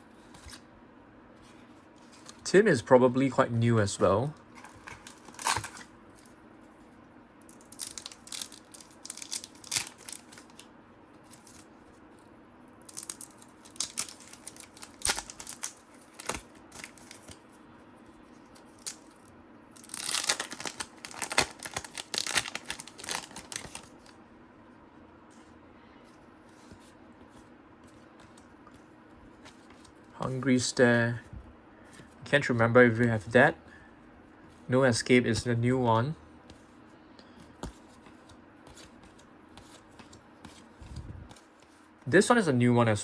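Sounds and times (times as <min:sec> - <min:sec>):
cards and wrapper crinkling: 0:04.6 - 0:06.3, 0:07.5 - 0:10.7, 0:12.8 - 0:17.4, 0:18.6 - 0:19.2, 0:19.8 - 0:24.1.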